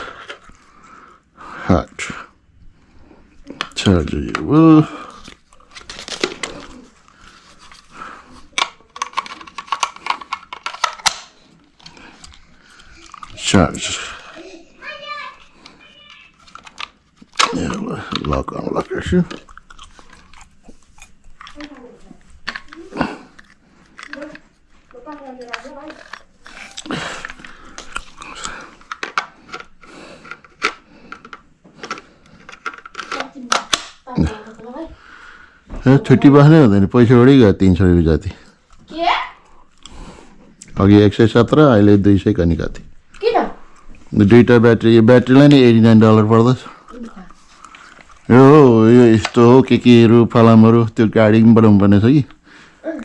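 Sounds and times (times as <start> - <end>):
hard parts clicking and knocking: 8.5 - 12.4, 28.7 - 33.9.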